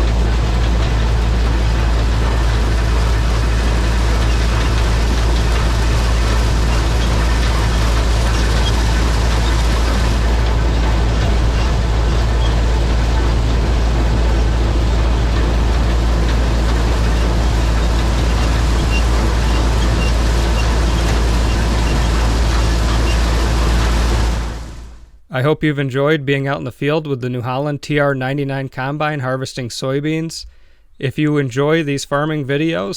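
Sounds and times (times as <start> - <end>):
threshing machinery roar: 0.0 - 25.1
combine engine rumbling: 0.0 - 25.2.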